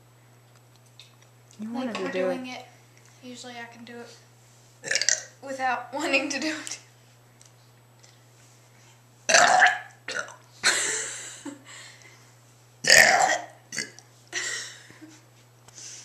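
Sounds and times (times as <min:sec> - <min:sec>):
girl burping loudly: 0:04.8 - 0:05.3, 0:09.3 - 0:10.4, 0:12.8 - 0:14.0.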